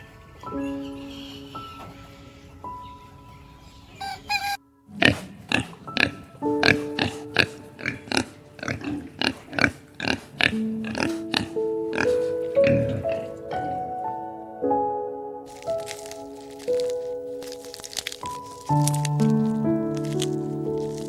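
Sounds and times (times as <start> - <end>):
soft background music: 0.0 - 21.0.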